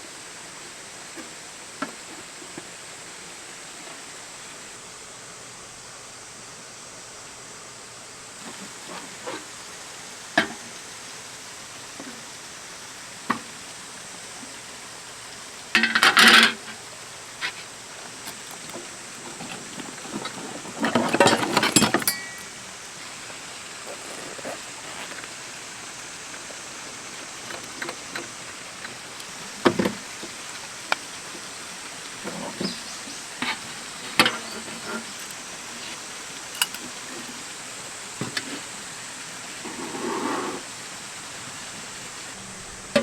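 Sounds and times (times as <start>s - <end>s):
steady background hiss: 0.0s - 43.0s
scrape or rustle: 8.4s - 9.5s, 17.4s - 22.5s, 23.8s - 25.6s, 33.4s - 37.4s, 39.6s - 40.8s
camp gear clicks and knocks: 17.4s - 22.8s, 23.8s - 25.5s, 33.4s - 37.4s.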